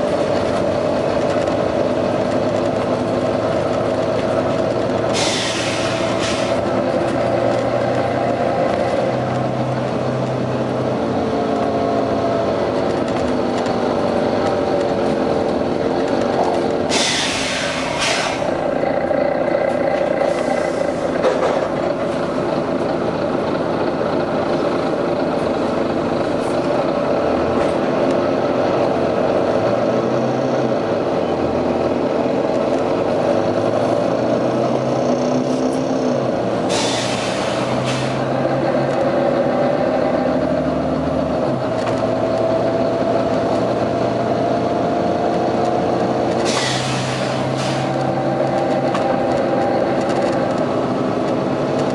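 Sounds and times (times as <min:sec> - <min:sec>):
bus diesel engine thrashing: 0:00.0 - 0:10.7, 0:12.4 - 0:29.2, 0:35.4 - 0:39.7, 0:45.1 - 0:51.9
short air hisses: 0:05.2 - 0:06.6, 0:16.9 - 0:18.5, 0:36.7 - 0:38.2, 0:46.4 - 0:47.9.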